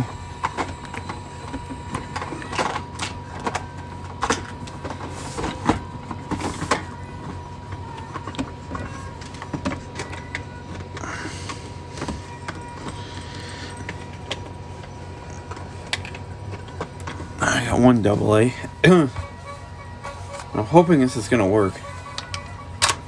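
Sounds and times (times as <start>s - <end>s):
steady low hum: 0.0s - 23.0s
hands rummaging with clicks: 0.4s - 17.6s.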